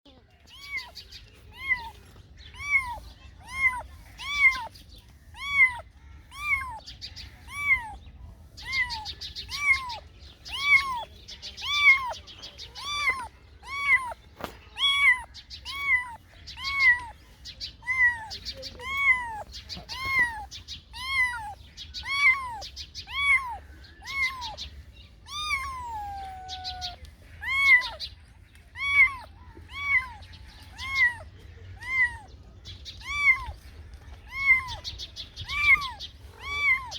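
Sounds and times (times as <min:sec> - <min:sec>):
cat meowing: 0:00.4 - 0:08.0, 0:08.6 - 0:28.1, 0:28.7 - 0:36.9.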